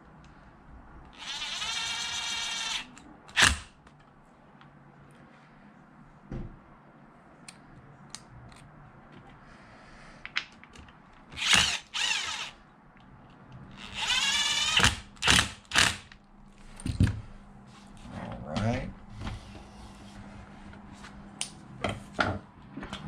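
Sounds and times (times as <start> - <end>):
power drill bursts: 1.2 - 3.7, 11.4 - 12.6, 13.8 - 16.1
thump: 6.3 - 6.6.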